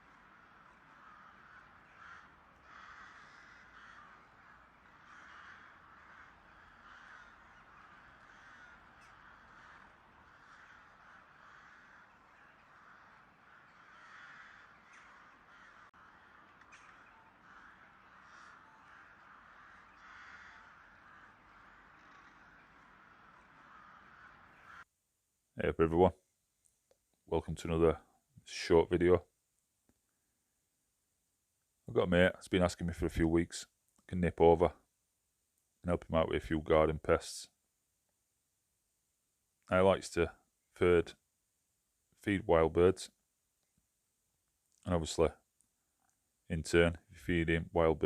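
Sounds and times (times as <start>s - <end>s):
faint crow cawing: 0.0s - 24.9s.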